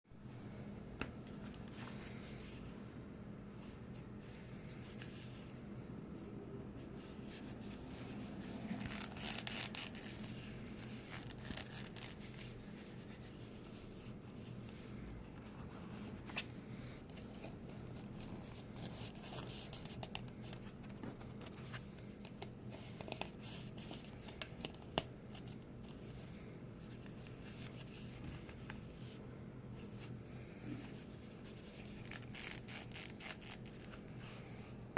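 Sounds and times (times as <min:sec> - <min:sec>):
leather creaking and crinkling: 0:08.4 - 0:10.3, 0:10.9 - 0:12.5, 0:31.8 - 0:34.0.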